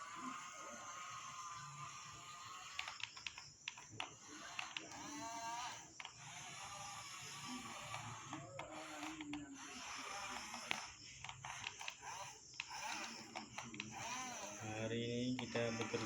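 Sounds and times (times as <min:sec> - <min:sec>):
small gear motors whining: 0:00.0 - 0:16.0
plastic clicks and rattles: 0:02.6 - 0:06.2, 0:07.8 - 0:14.7.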